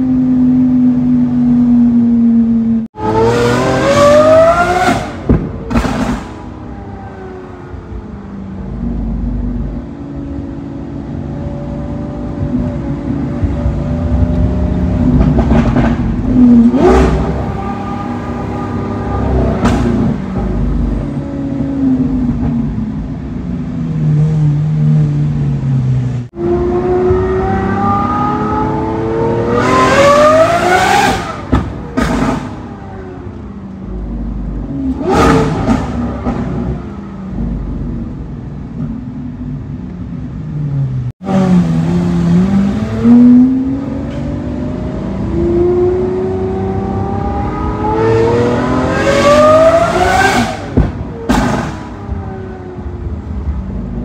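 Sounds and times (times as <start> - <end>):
sports car engine revving: 2.9 - 7.3, 8.8 - 22.5, 26.3 - 33.1, 33.9 - 38.3, 41.0 - 53.2.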